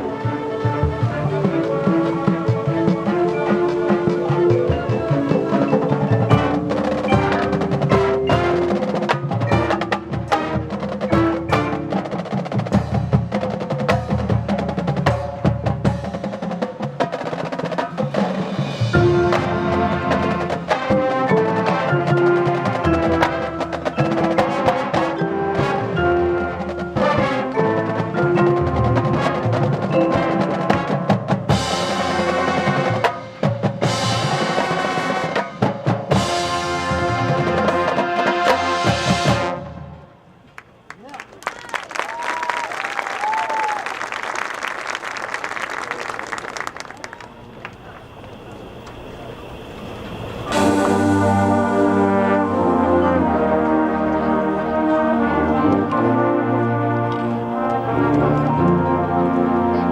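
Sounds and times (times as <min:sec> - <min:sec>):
percussion band music: 0:00.0 - 0:40.0, 0:40.6 - 0:48.8, 0:50.2 - 0:59.9
drumline hits and rolls: 0:00.0 - 0:48.8, 0:50.4 - 0:59.9
sustained brass chords: 0:19.0 - 0:40.4, 0:50.4 - 0:59.9
loud cymbal crashes: 0:49.1 - 0:52.4.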